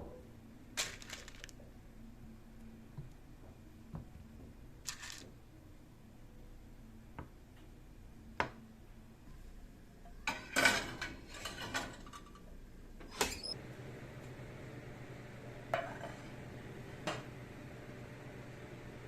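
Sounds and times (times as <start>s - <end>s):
low steady hum: 0.0s - 10.3s
utensils and dishes clinking: 10.3s - 12.5s.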